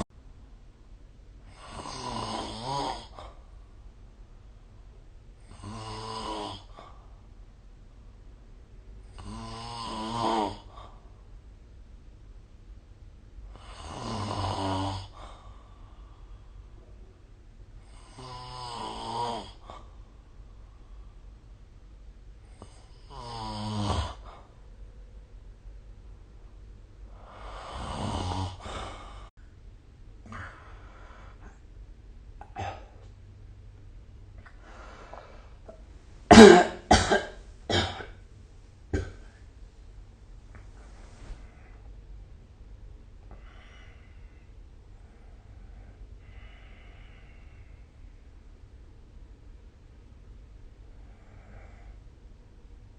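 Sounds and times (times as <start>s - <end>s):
quiet breathing: 1.4s - 4.1s, 5.4s - 7.6s, 10.5s - 11.5s, 13.4s - 23.3s, 24.0s - 25.1s, 26.4s - 29.6s, 30.2s - 33.3s, 34.3s - 36.3s, 40.5s - 42.4s, 43.1s - 48.6s, 50.7s - 52.9s
person snoring: 1.5s - 3.4s, 5.5s - 6.9s, 9.1s - 10.9s, 13.6s - 15.4s, 17.8s - 19.8s, 22.6s - 24.4s, 27.2s - 29.3s
faint breath: 15.1s - 16.9s, 28.6s - 29.3s, 30.3s - 31.6s, 34.4s - 35.8s, 43.3s - 48.3s, 50.9s - 52.1s
person coughing: 36.3s - 38.2s, 39.0s - 39.4s.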